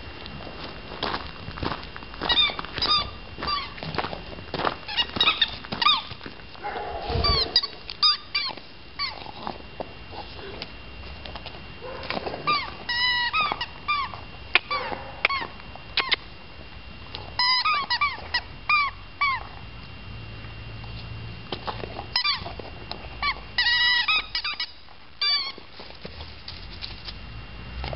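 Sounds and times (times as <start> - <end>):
rubber squeaky toy squeaks: 4.9 - 6.0, 23.2 - 25.6.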